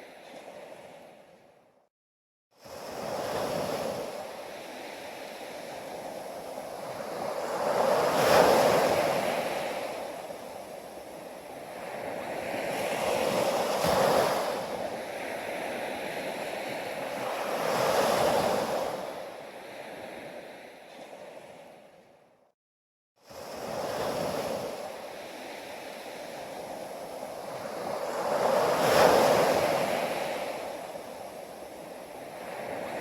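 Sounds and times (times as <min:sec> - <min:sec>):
sea waves breaking on beach: 0:02.6 - 0:21.8, 0:23.2 - 0:33.0.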